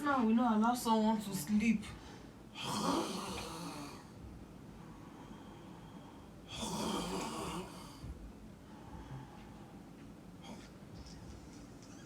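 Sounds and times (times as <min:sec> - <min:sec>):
person snoring: 0:02.6 - 0:04.2, 0:06.5 - 0:08.1.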